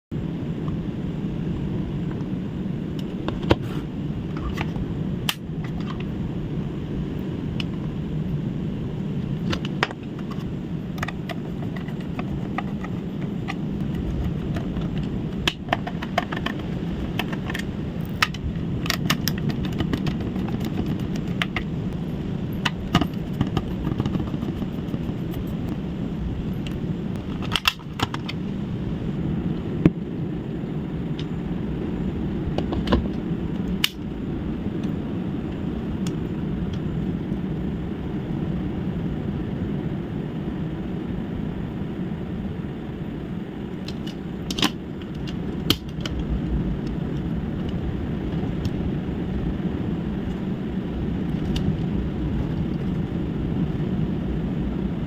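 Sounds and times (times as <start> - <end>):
low background rumble: 0.0 - 55.0
small tools clicking and tapping: 9.5 - 21.7.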